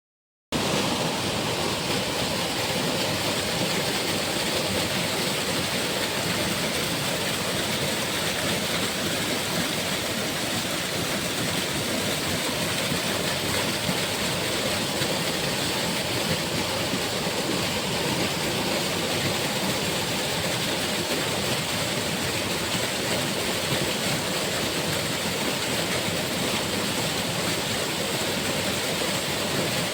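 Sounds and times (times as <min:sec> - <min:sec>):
steady rushing noise: 0:00.6 - 0:08.1.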